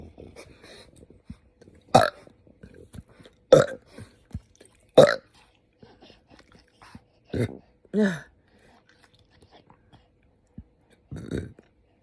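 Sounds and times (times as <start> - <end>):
woman burping: 3.5 - 3.8.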